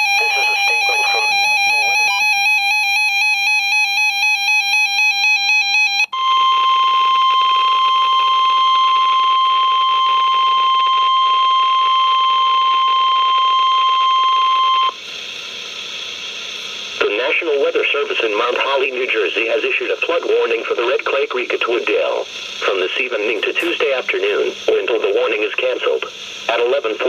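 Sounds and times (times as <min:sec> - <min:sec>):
radio hiss: 0:00.0 - 0:02.4, 0:14.9 - 0:27.0
warbling digital data burst: 0:00.0 - 0:02.4
steady warning alarm tone: 0:00.0 - 0:17.4.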